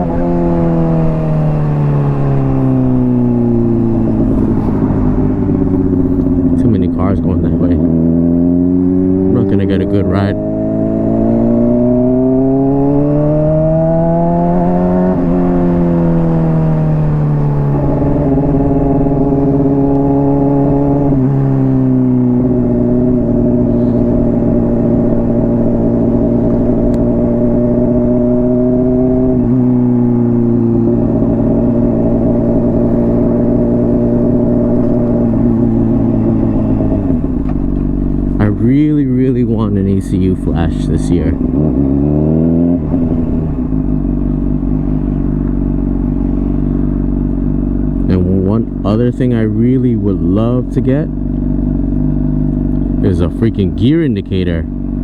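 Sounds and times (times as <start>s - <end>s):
motorcycle engine revving: 0.0s - 55.0s.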